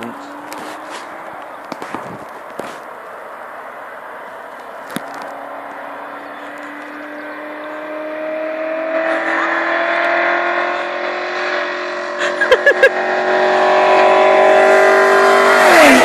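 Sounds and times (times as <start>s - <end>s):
engine accelerating: 3.2s - 16.0s.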